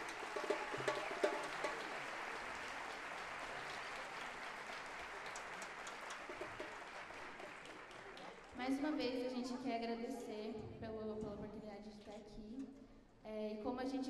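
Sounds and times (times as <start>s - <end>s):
audience applause: 0.0s - 8.6s.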